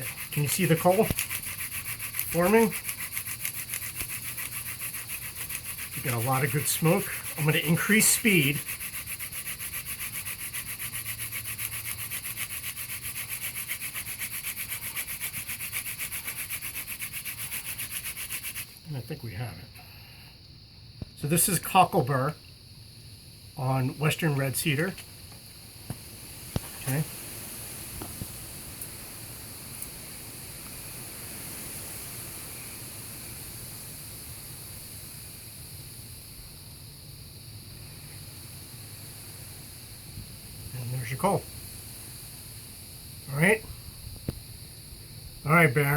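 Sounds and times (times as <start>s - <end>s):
hand-drill spindle rubbing hiss: 0.0s - 18.8s
steady background hiss: 0.0s - 45.9s.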